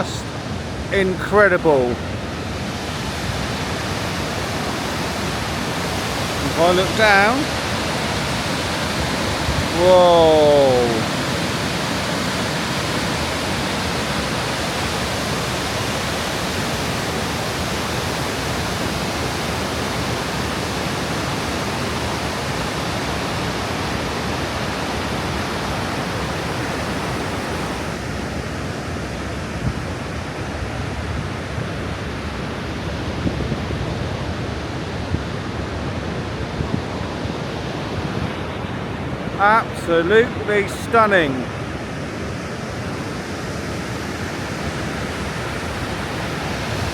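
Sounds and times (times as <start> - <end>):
waterfall rushing: 0.0 - 30.1, 38.9 - 46.9.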